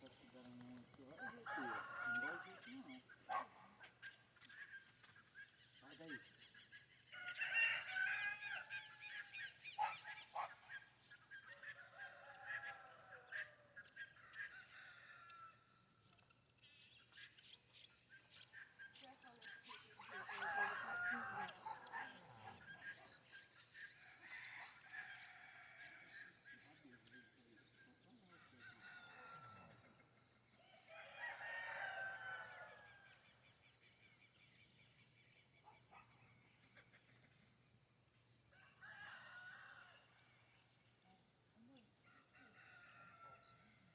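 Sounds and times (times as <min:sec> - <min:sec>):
faint fowl calls: 0:00.0 - 0:37.6
birds chirping: 0:00.0 - 0:43.9
faint rooster crowing: 0:01.0 - 0:02.9, 0:11.5 - 0:15.8, 0:20.1 - 0:22.7, 0:28.2 - 0:33.4, 0:38.5 - 0:40.4, 0:42.1 - 0:43.9.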